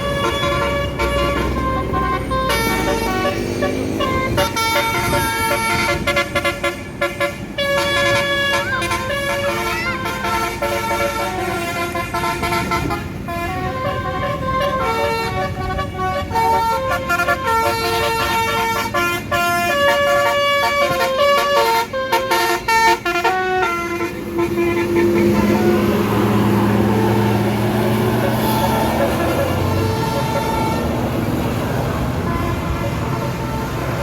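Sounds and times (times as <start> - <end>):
musical air horn tune: 0.0 - 34.0.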